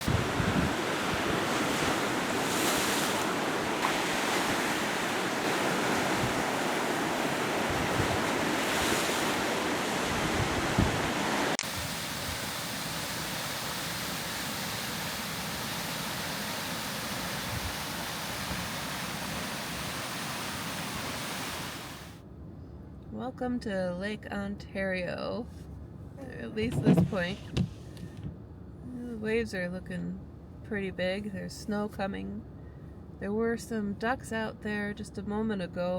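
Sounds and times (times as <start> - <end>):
wind gusting across microphone: 0.0 - 22.1
waves breaking on shore: 0.0 - 22.2, 26.6 - 27.9.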